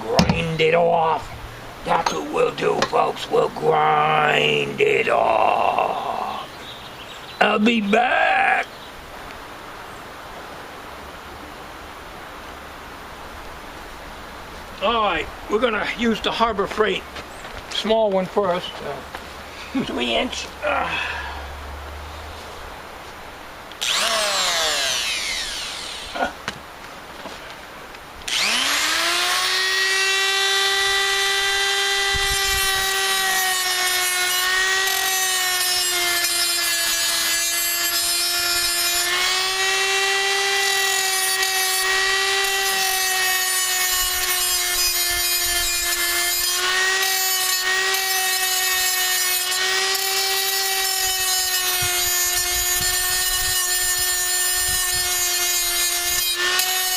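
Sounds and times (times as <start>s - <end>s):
cut-off tool whining: 23.8s - 26.4s, 28.2s - 56.9s
grinding against steel rivet: 40.8s - 56.9s.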